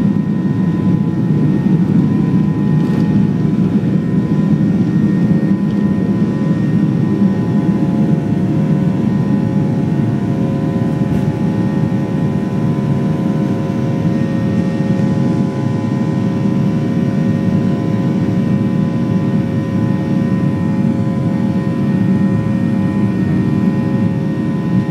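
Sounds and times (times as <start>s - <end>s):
jet engines roaring: 0.0s - 24.9s.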